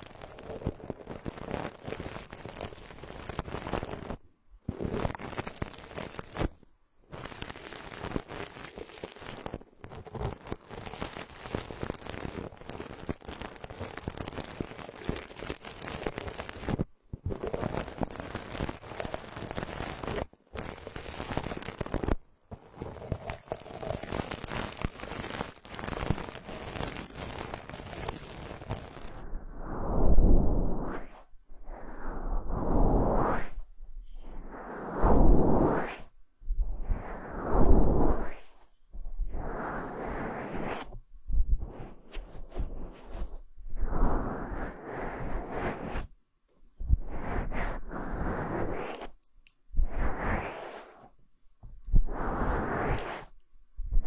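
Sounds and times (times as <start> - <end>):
brush bristles rustling on microphone: 10.1 - 29.2.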